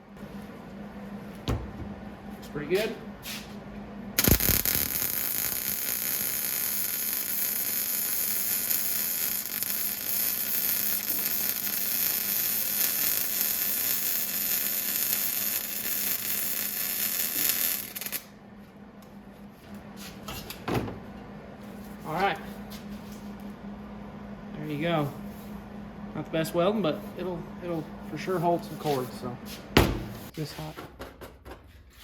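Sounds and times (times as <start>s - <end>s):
electric arc welding: 4.2s - 18.3s.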